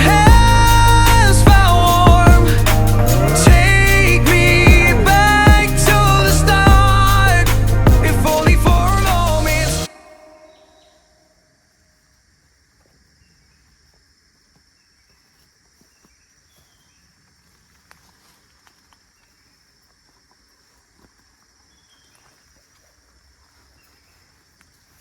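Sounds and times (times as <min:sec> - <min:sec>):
high insect drone: 0:00.0 - 0:10.9.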